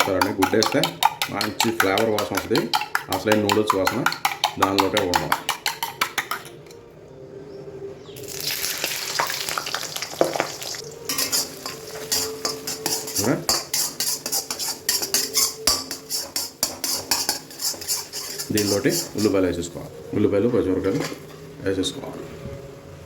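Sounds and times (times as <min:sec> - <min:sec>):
spatula scraping pan: 0:00.0 - 0:06.5, 0:11.1 - 0:19.7
eggs sizzling in oil: 0:08.2 - 0:19.9.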